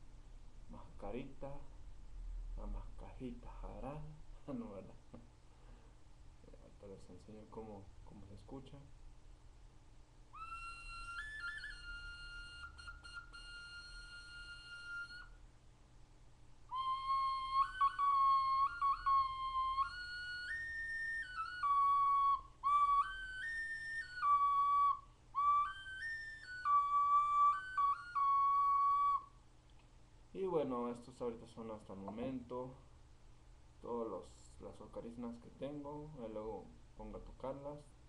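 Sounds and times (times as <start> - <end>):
ocarina notes: 10.3 - 15.4, 16.6 - 29.4.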